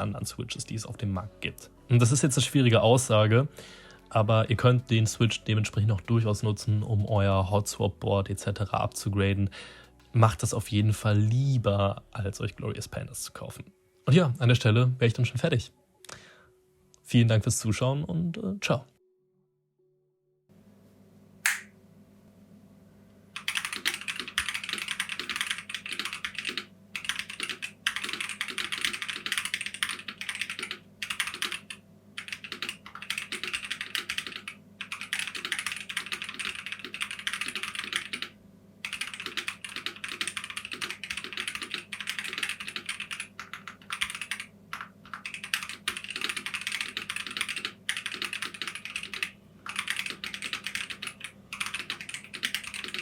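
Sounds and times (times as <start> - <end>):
mechanical keyboard typing: 23.4 - 53.0.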